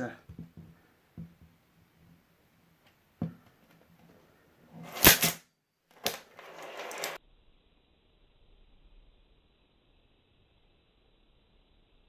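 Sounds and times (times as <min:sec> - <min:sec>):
coins clattering: 0:04.7 - 0:05.4, 0:06.0 - 0:07.2
coins clicking onto magnet: 0:04.8 - 0:05.4, 0:06.0 - 0:07.2.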